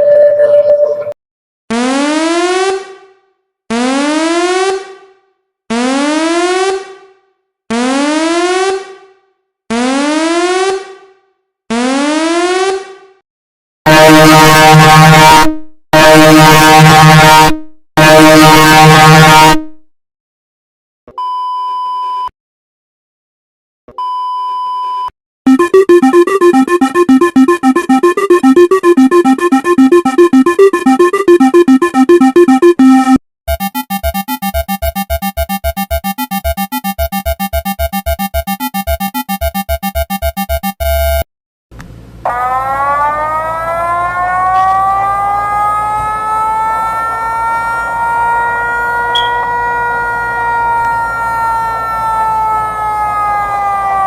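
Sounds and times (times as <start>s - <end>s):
electronic alarm beeps: 25.5s - 41.2s, 49.2s - 49.4s
siren winding up: 25.5s - 41.2s, 49.1s - 49.6s.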